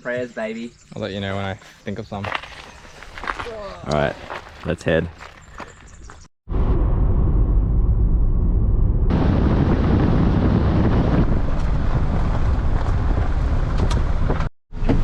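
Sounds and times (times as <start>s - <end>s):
car road noise: 6.5s - 15.0s
wind buffeting microphone: 9.0s - 14.5s.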